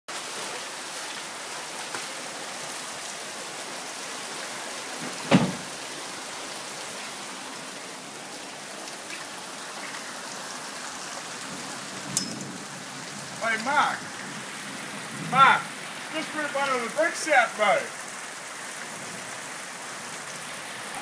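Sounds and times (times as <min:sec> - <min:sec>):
heavy rain pouring: 0:00.1 - 0:21.0
loud thump: 0:05.2 - 0:05.7.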